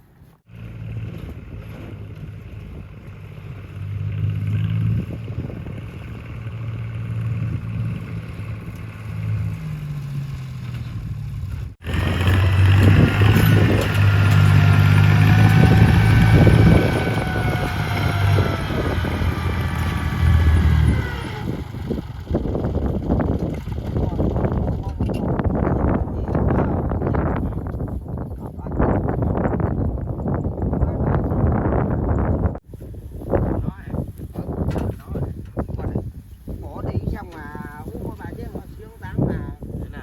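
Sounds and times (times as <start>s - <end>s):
engine humming: 0.0s - 27.4s
high gliding engine whine: 0.5s - 24.3s.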